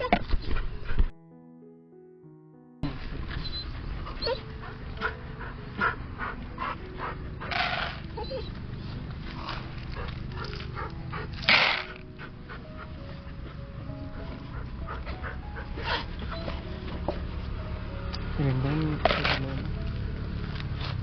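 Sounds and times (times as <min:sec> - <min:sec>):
music: 0:00.0 - 0:21.0
street background noise: 0:02.8 - 0:21.0
dog whimpering and whining: 0:03.3 - 0:17.0.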